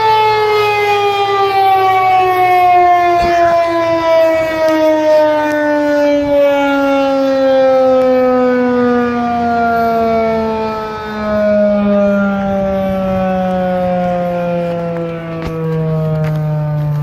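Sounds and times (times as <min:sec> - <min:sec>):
warning siren falling in pitch: 0:00.0 - 0:17.0.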